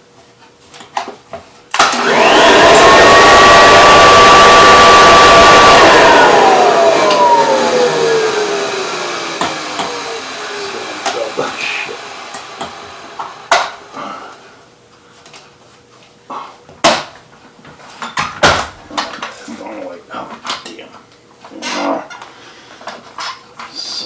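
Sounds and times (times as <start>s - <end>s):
vacuum cleaner winding down: 1.8s - 14.4s.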